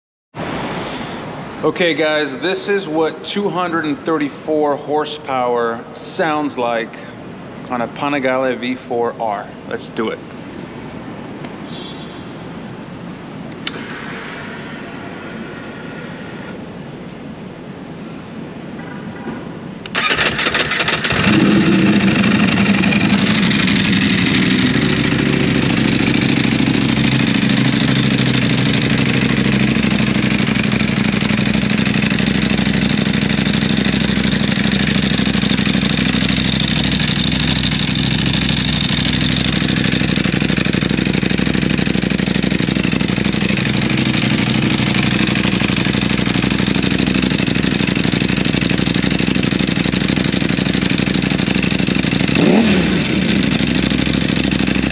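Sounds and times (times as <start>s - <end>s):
motorcycle engine idling: 19.9s - 54.9s.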